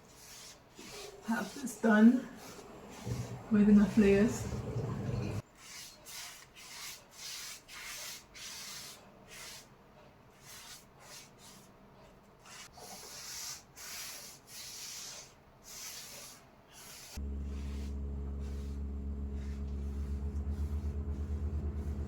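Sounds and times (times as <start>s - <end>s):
brush swishing on surface: 0.0s - 4.5s, 12.4s - 22.0s
low hum: 3.1s - 5.4s, 17.2s - 22.0s.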